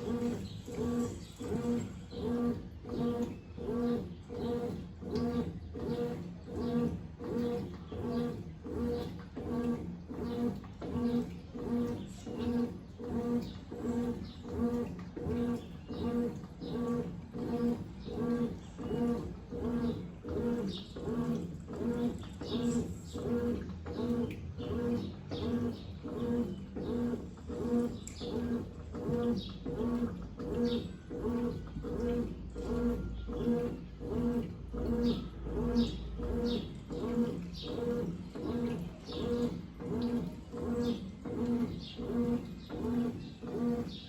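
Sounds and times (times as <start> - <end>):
washing machine motor humming: 0.0 - 44.0
water swishing in drum: 0.0 - 44.0.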